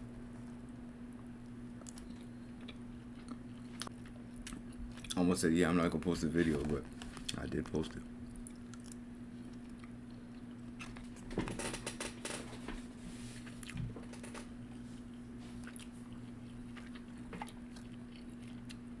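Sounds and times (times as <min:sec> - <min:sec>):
steady hum: 0:00.0 - 0:19.0
person chewing with wet mouth sounds: 0:01.1 - 0:05.2, 0:06.5 - 0:10.9, 0:14.7 - 0:19.0.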